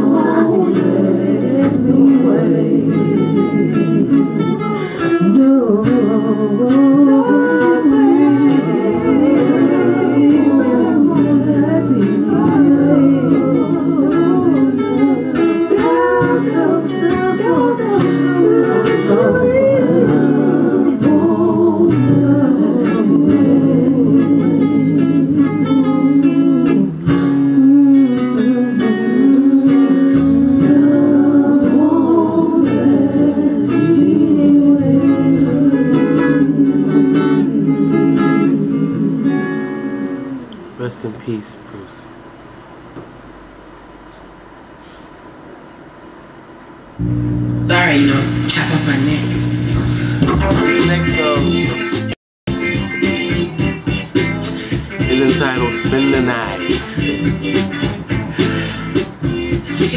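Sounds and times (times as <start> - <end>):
slow soul song: 0.0 - 40.9, 43.3 - 59.9
guitar: 0.0 - 59.9
bass line: 47.0 - 59.9.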